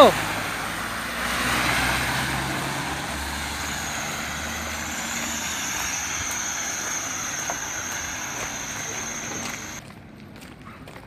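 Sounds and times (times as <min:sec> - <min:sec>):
street noise hiss: 0:00.0 - 0:09.8
vehicle engine running low: 0:01.5 - 0:09.8
thin high whine: 0:03.0 - 0:09.8.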